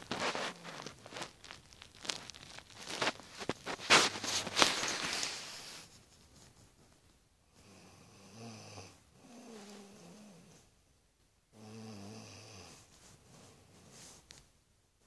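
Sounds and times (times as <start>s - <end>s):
woman snoring: 7.6s - 10.6s, 11.6s - 12.8s.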